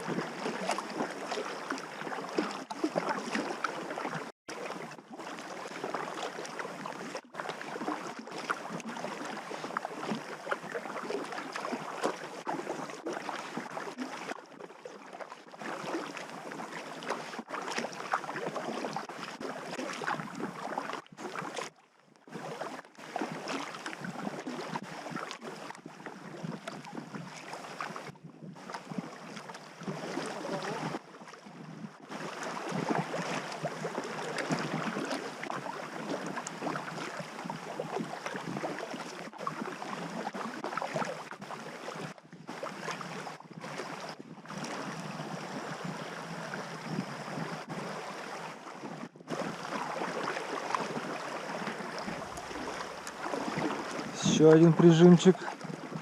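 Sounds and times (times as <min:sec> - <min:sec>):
river water rushing and splashing: 0:00.0 - 0:31.4, 0:32.1 - 0:56.0.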